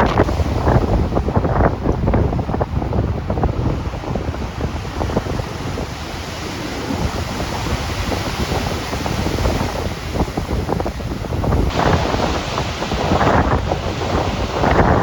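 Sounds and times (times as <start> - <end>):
storm waves breaking ashore: 0.0 - 15.0
wind buffeting microphone: 0.0 - 15.0.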